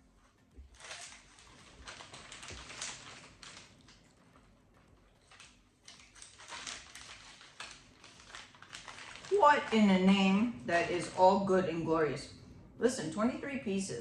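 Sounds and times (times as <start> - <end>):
crunchy snacks being chewed: 0.7 - 9.7.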